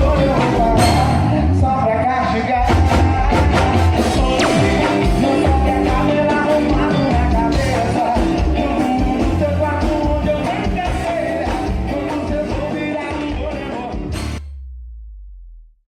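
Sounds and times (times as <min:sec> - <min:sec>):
rock band with singing: 0:00.0 - 0:14.4
steady drum hits: 0:02.6 - 0:06.1.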